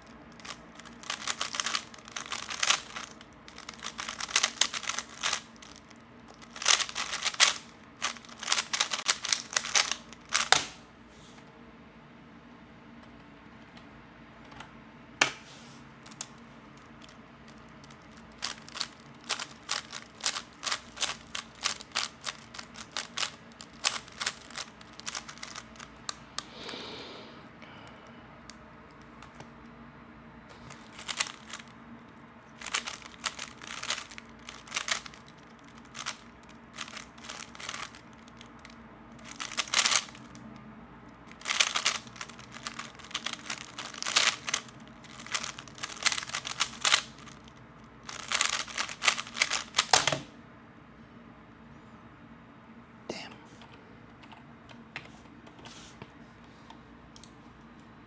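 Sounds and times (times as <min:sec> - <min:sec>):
puzzle cube layers clicking: 0:00.4 - 0:05.4, 0:06.4 - 0:10.7.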